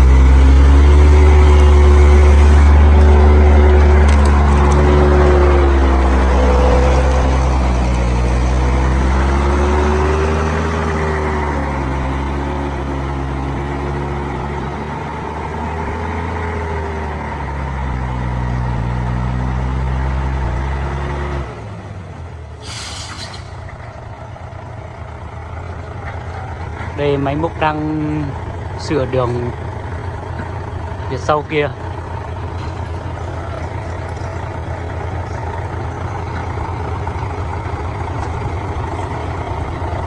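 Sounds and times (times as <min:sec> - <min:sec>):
heavy vehicle engine working hard: 0:00.0 - 0:40.0
air hiss: 0:22.6 - 0:23.6.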